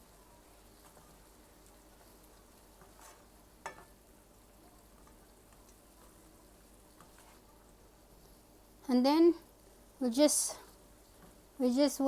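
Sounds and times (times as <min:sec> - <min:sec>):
vegetables sizzling in a pan: 0:00.0 - 0:12.0.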